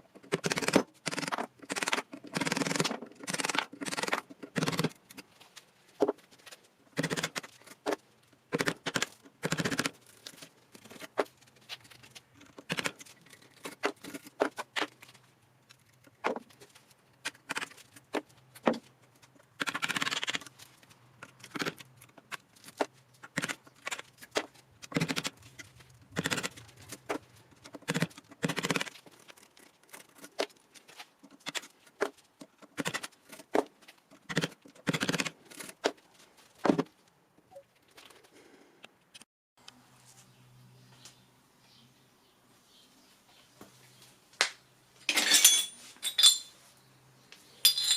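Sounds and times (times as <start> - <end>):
metal parts clicking and scraping: 45.1 - 46.6, 47.6 - 47.9.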